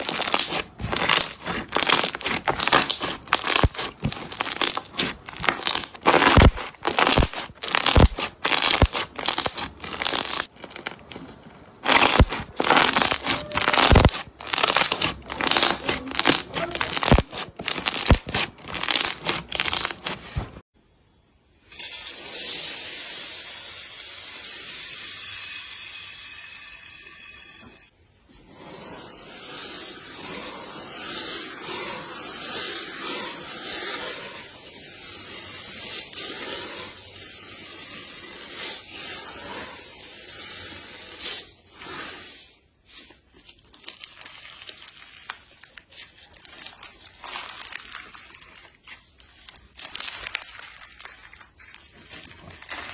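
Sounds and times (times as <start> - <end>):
slime crackling and clicking: 0.0 - 11.0, 11.8 - 20.2.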